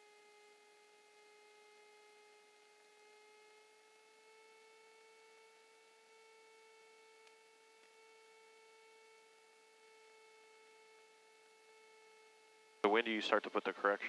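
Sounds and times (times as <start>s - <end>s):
faint electrical whine: 0.0s - 14.0s.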